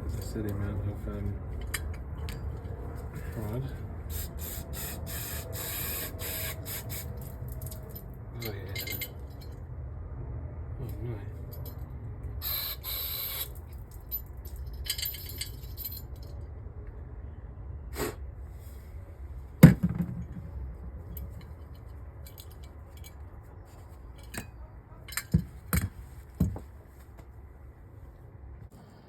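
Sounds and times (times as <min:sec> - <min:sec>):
metal parts clinking on workbench: 0:07.2 - 0:09.6, 0:24.2 - 0:25.9.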